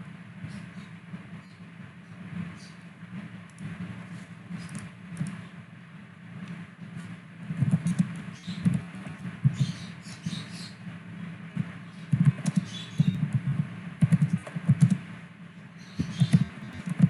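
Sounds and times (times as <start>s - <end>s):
computer keyboard and mouse clicks: 4.6s - 5.4s, 7.6s - 8.9s, 12.1s - 15.0s, 16.0s - 17.0s.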